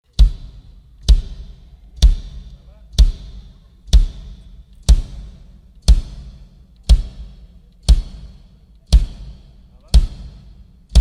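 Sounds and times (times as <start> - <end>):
kick drum thuds: 0.0 - 11.0.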